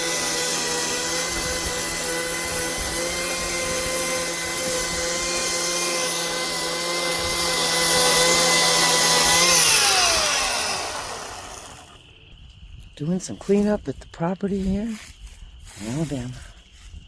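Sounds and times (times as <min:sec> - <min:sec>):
power tool winding down: 0:00.0 - 0:12.0
power tool running: 0:00.0 - 0:12.1.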